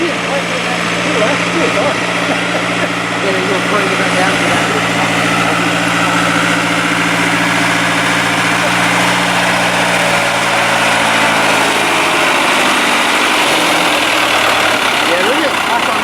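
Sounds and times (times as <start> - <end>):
loud steady rushing noise: 0.0 - 16.0
vehicle engine idling: 0.0 - 16.0.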